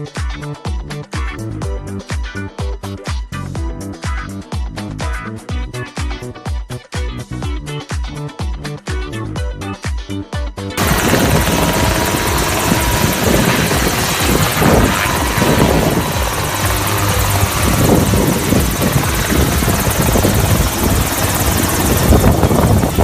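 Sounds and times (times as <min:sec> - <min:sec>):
helicopter rotor and engine: 0:10.8 - 0:23.0.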